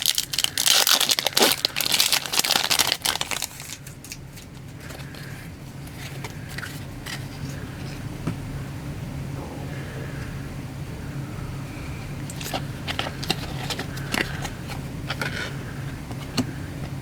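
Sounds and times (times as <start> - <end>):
foil wrapper crinkling and tearing: 0.0 - 7.6, 12.3 - 15.9
low steady hum: 0.0 - 17.0.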